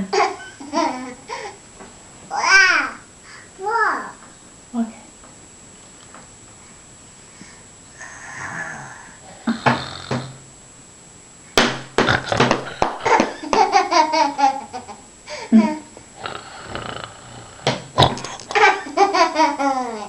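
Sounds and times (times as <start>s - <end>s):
person laughing: 12.0s - 15.9s, 18.1s - 20.0s.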